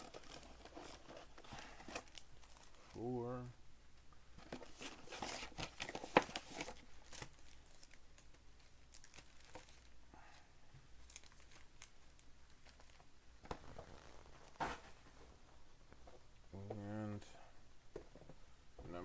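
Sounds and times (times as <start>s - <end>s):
plastic wrapping crinkling and tearing: 0.0s - 3.0s, 4.6s - 10.0s, 11.0s - 15.4s.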